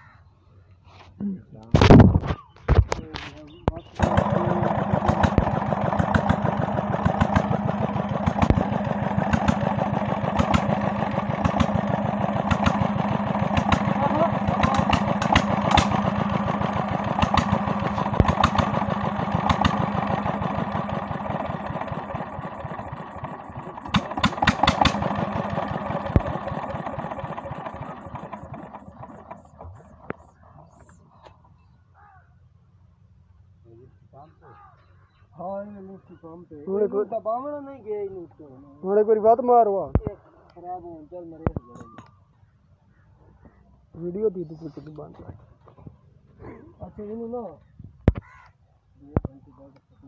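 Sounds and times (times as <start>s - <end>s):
diesel engine running: 3.0s - 31.4s.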